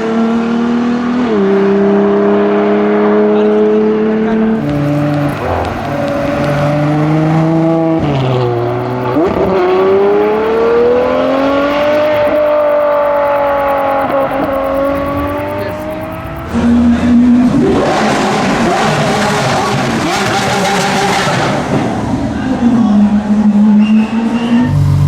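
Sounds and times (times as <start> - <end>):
car engine accelerating: 0.0 - 25.0
louder engine sound: 4.3 - 23.7, 24.5 - 25.0.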